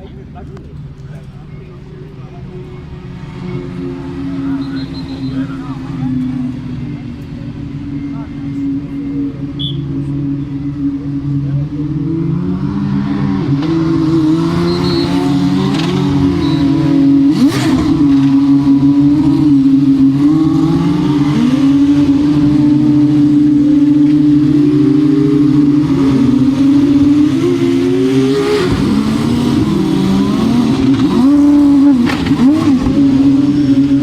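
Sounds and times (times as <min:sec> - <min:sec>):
race car engine idling: 0:00.0 - 0:12.0
race car engines revving: 0:00.0 - 0:34.0.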